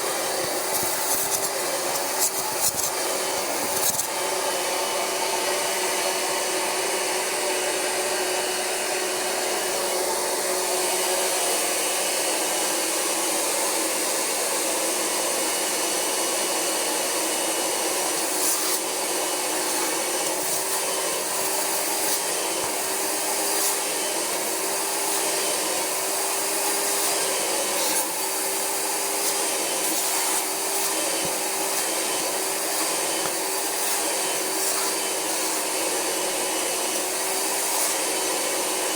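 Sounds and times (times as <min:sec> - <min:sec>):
hand tool on couch fabric: 0:00.0 - 0:05.9, 0:16.9 - 0:38.9
carpet cleaner vacuum motor: 0:00.0 - 0:38.9.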